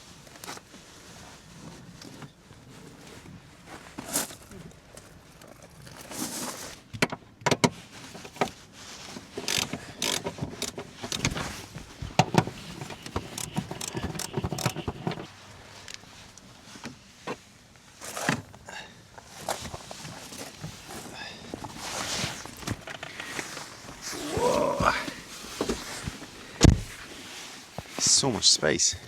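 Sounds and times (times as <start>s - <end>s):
car interior parts clicking and rattling: 6.9s - 17.4s, 19.4s - 24.0s, 24.8s - 27.0s.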